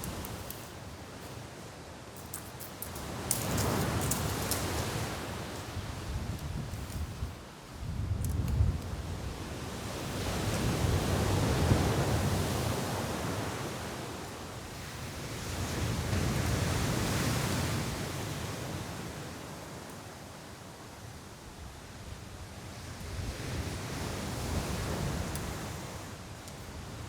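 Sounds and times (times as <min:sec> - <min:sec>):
sea waves washing onto beach: 0:00.0 - 0:07.6, 0:08.8 - 0:20.1
strong wind: 0:04.0 - 0:13.9.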